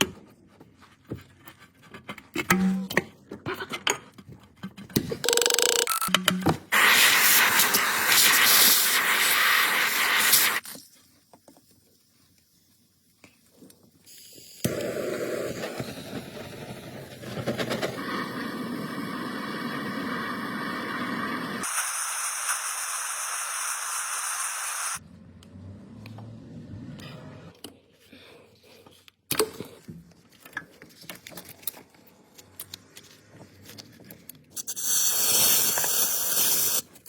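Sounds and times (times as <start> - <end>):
loud steady hiss: 6.7 - 10.6, 18.0 - 25.0.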